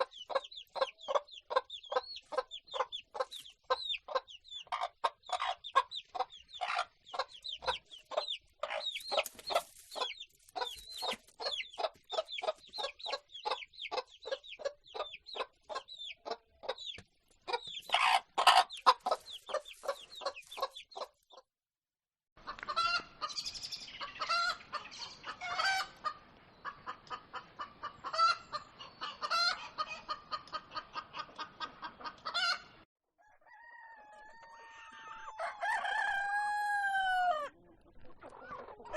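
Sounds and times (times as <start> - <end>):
hens cackling: 0.0 - 21.1, 22.4 - 32.8, 33.4 - 38.9
hens clucking: 0.0 - 21.4, 22.4 - 32.8, 34.6 - 38.9
rooster crowing: 33.2 - 37.5.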